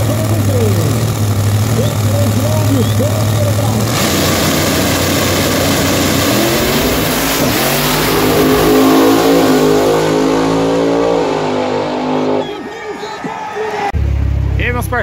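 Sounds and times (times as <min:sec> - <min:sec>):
car engine revving hard: 0:00.0 - 0:12.5.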